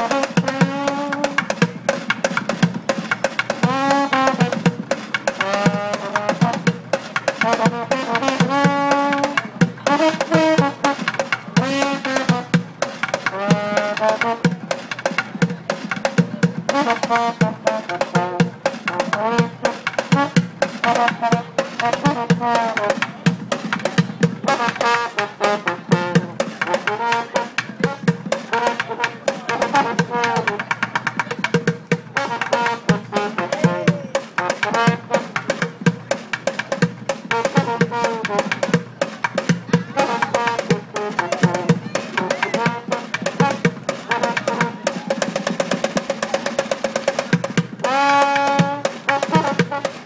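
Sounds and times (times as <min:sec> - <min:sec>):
group drumming: 0:00.0 - 0:50.0
pitched melody notes: 0:37.3 - 0:45.2.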